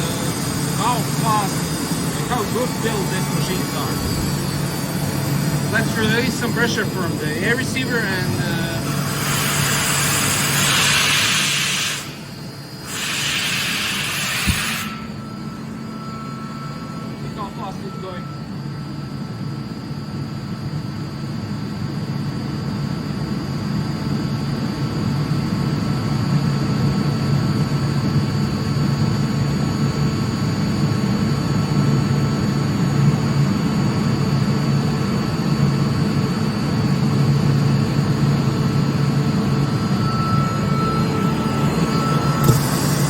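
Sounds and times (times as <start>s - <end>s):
air compressor running: 0.0s - 20.8s, 33.3s - 43.0s.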